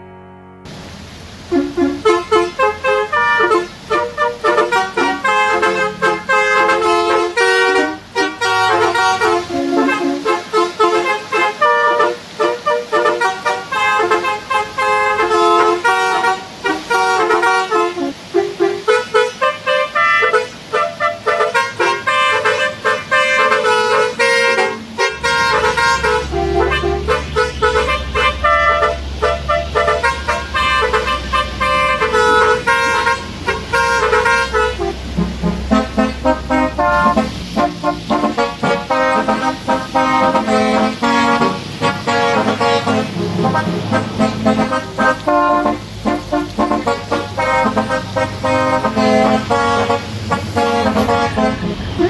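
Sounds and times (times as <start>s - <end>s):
truck air horn tune: 1.4s - 52.0s.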